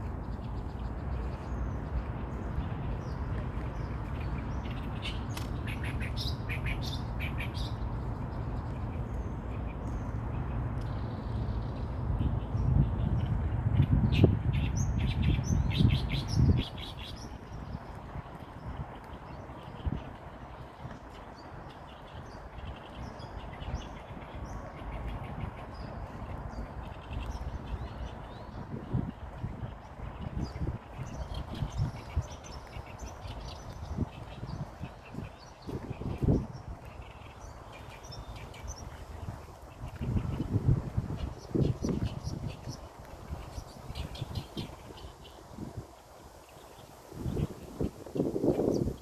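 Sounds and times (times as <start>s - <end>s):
songbird chirping and trilling: 3.8s - 10.2s.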